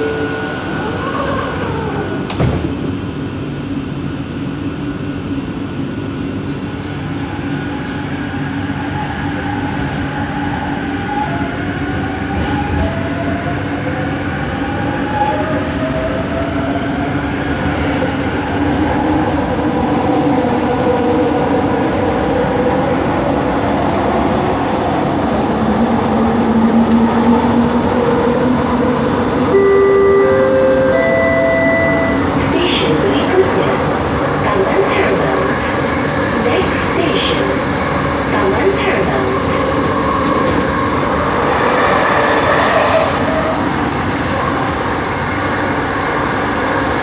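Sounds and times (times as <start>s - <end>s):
train running noise: 0.0s - 47.0s.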